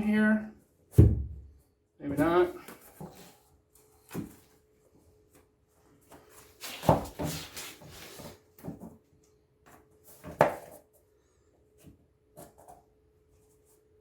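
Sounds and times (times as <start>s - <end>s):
plank scraping and rubbing: 6.6s - 8.4s.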